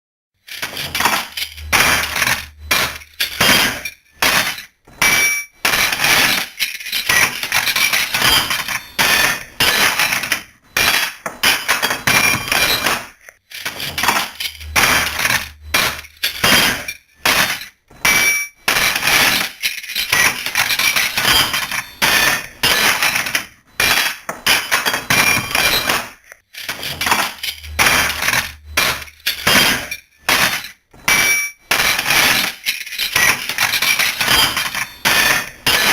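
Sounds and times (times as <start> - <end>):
metal tools clattering into toolbox: 0.5 - 35.9.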